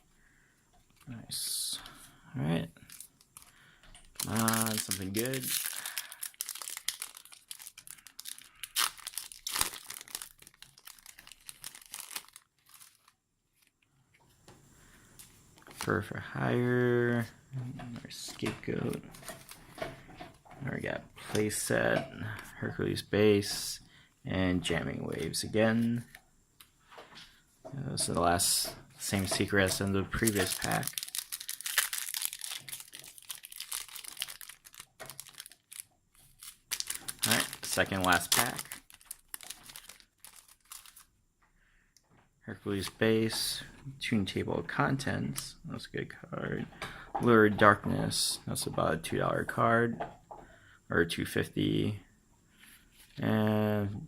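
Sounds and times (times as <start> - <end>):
foil pack tearing and crinkling: 4.1 - 13.7, 29.7 - 41.1.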